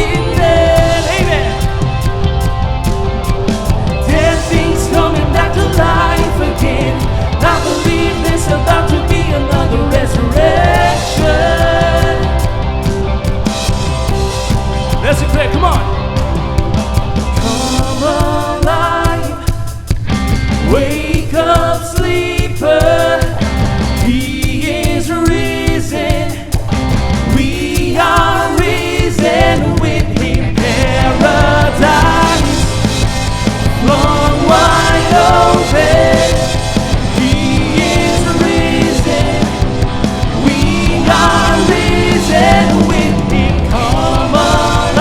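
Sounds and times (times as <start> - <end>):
person singing: 0.0 - 2.1, 3.8 - 12.8, 17.3 - 19.9, 27.3 - 45.0
band with drums and bass: 0.0 - 45.0.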